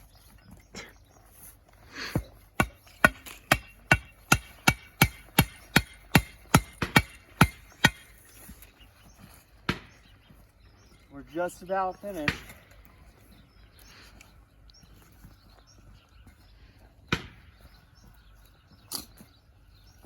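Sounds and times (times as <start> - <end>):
tool tamping stones and dirt: 2.0 - 10.2, 12.0 - 12.9.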